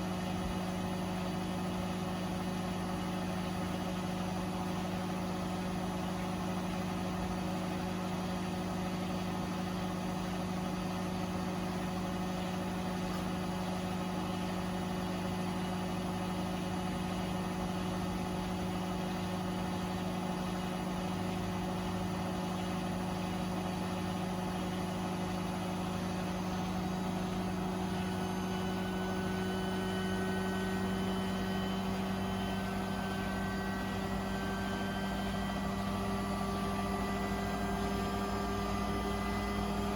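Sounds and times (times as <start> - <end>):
washing machine motor hum: 0.0 - 39.9
drum whine rising in pitch: 25.9 - 39.9.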